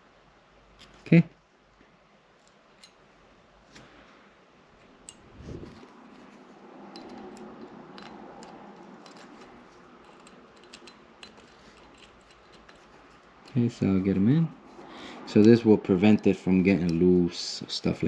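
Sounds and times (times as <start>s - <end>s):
faint handling noise: 0.7s - 17.4s
small screws and tools clinking: 2.4s - 3.0s, 4.8s - 14.3s.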